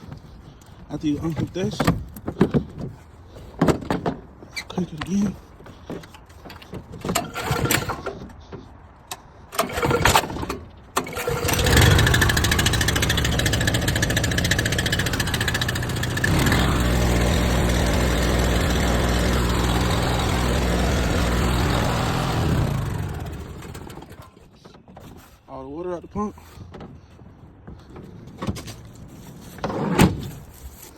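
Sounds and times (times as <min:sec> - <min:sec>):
pressure washer engine running: 0:11.2 - 0:24.1.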